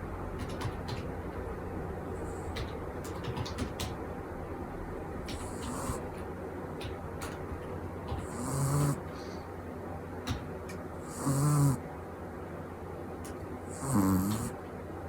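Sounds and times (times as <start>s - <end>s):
puppy squeaky snoring: 5.3s - 6.0s, 8.2s - 9.0s, 11.0s - 11.8s, 13.7s - 14.6s.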